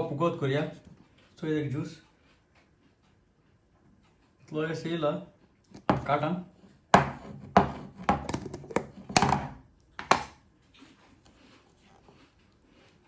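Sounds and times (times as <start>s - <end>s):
kitchen utensils knocking and clattering: 5.8s - 6.3s, 7.0s - 10.4s.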